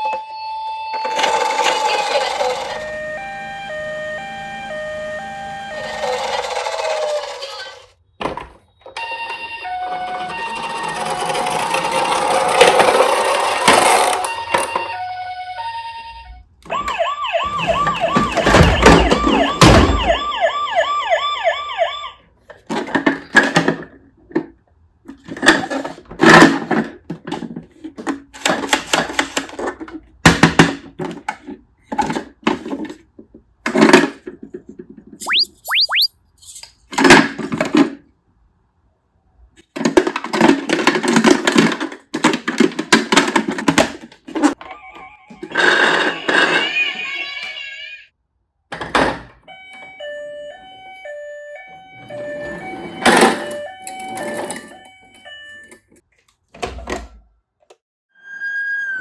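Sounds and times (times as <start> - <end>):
toy siren wailing: 0.0 - 7.9, 9.0 - 11.2, 14.2 - 22.2, 35.2 - 36.1, 49.5 - 55.6
plastic toy clacks and rattles: 1.1 - 2.8, 6.0 - 7.9, 22.5 - 24.4, 25.1 - 33.0, 39.6 - 44.6
quick rising whistles: 35.2 - 36.1.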